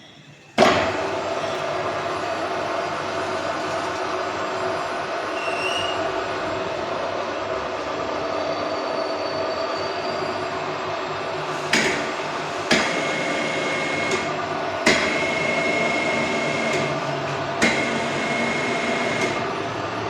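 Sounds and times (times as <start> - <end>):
milling machine humming: 9.9 - 20.0.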